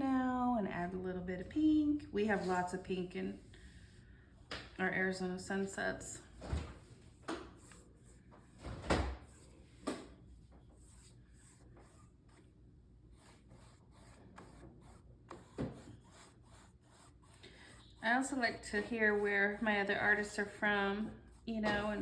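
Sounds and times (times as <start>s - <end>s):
paintbrush rubbing on canvas: 2.2s - 4.1s, 6.9s - 8.6s, 9.2s - 22.0s.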